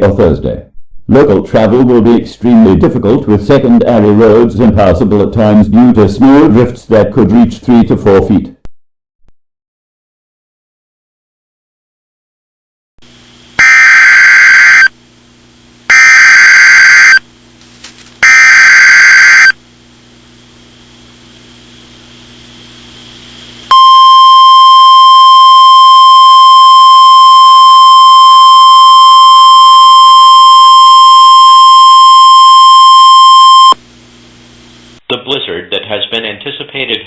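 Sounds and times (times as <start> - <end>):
screeching data bursts: 13.6 - 14.9, 15.9 - 17.2, 18.2 - 19.6
shrill two-tone alert signal: 13.6 - 14.9, 15.9 - 17.2, 18.2 - 19.6, 23.7 - 33.8.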